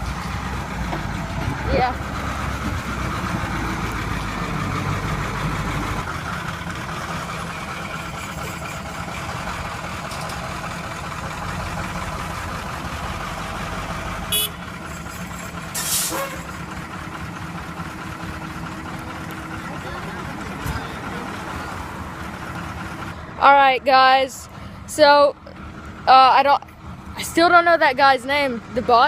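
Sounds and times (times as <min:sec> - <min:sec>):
diesel engine running: 0:00.0 - 0:29.0
brief hiss: 0:15.8 - 0:16.4.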